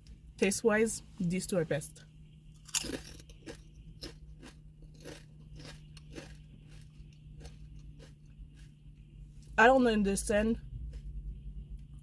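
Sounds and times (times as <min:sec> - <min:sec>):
person chewing potato chips: 0:02.6 - 0:09.1.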